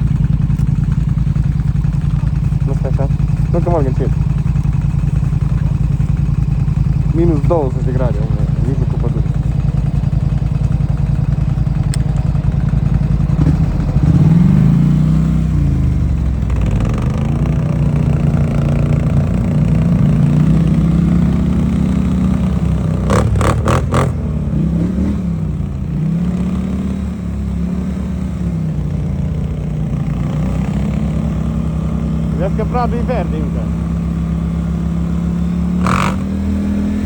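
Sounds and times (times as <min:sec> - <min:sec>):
atv engine revving: 0:00.0 - 0:37.0
sharp clicks: 0:00.2 - 0:02.6, 0:09.2 - 0:13.6.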